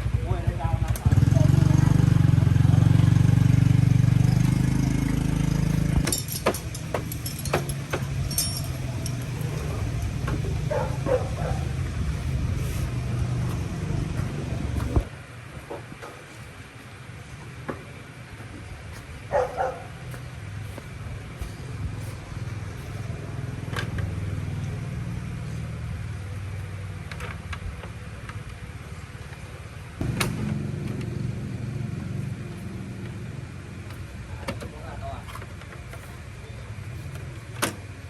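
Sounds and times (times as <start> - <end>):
low motor rumble: 0.0 - 38.0
clicks and small knocks: 6.0 - 11.2.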